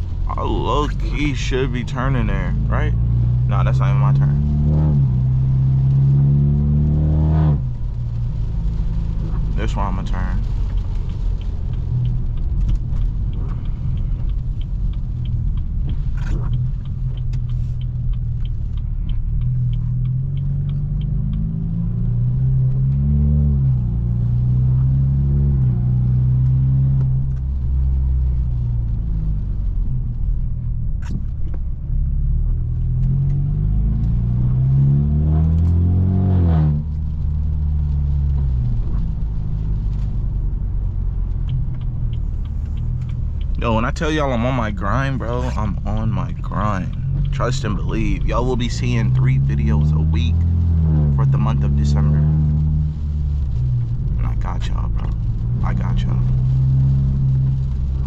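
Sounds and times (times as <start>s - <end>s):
car engine and exhaust accelerating: 0.0s - 58.0s
sharp clicks: 10.3s - 23.0s, 39.8s - 52.2s.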